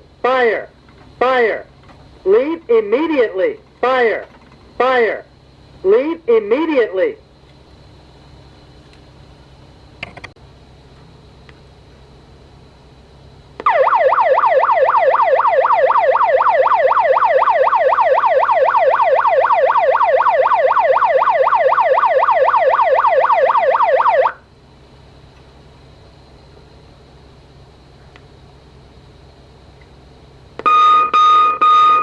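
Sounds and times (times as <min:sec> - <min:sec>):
electronic siren alarm tone: 0:13.6 - 0:24.4, 0:30.6 - 0:32.0.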